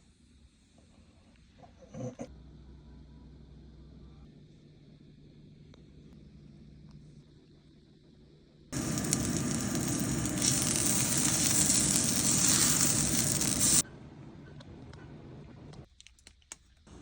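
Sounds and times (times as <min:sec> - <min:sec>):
food sizzling in a hot pan: 0:08.8 - 0:13.8.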